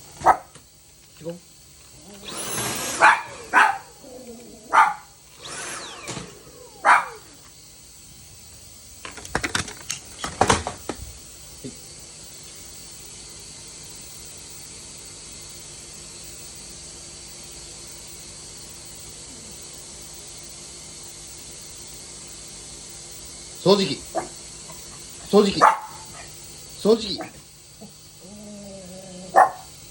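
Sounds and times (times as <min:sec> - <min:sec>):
dog barking sharply: 0:00.2 - 0:00.5, 0:02.9 - 0:03.9, 0:04.7 - 0:05.1, 0:06.8 - 0:07.2, 0:25.6 - 0:26.3, 0:29.4 - 0:29.7.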